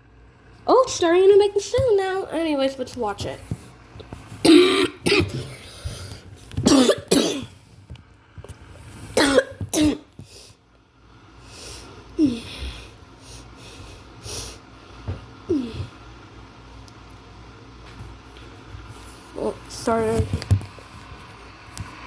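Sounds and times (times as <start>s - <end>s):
person coughing: 4.4s - 5.7s, 6.6s - 7.6s, 9.2s - 10.1s
electric kettle hiss: 5.4s - 12.2s.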